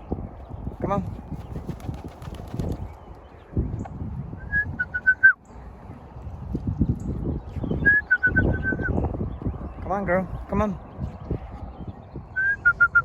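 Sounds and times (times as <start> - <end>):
wind rumble on microphone: 0.0 - 13.0.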